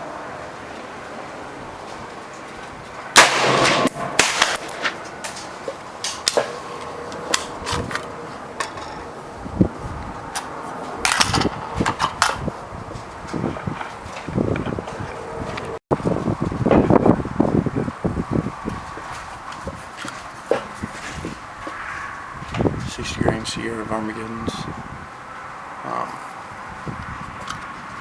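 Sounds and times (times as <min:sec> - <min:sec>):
rifle shot: 0:03.2 - 0:05.0.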